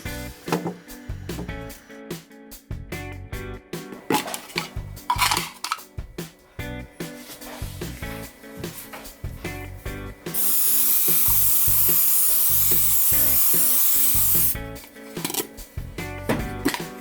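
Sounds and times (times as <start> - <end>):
music with steady beat: 0.0 - 17.0
loud spraying hiss: 10.3 - 14.6.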